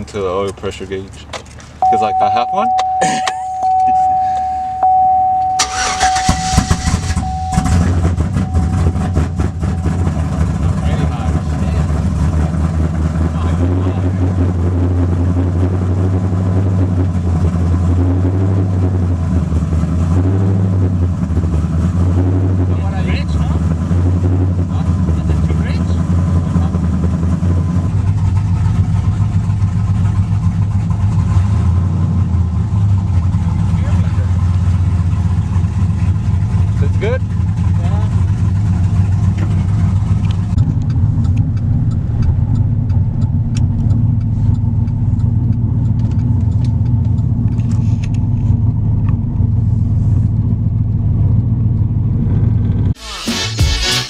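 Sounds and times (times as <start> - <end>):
truck engine idling: 0.0 - 14.3, 24.8 - 54.0
electronic chime: 1.8 - 10.3
engine starting and idling: 2.8 - 12.4.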